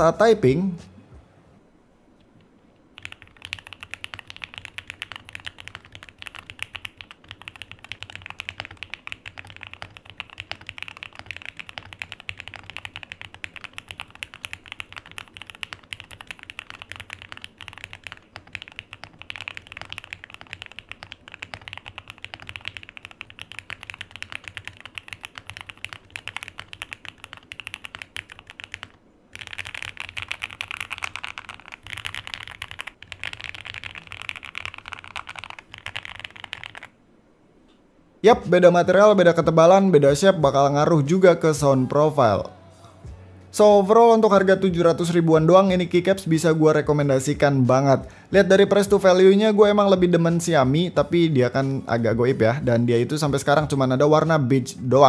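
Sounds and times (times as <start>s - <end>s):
mechanical keyboard typing: 3.0s - 36.9s.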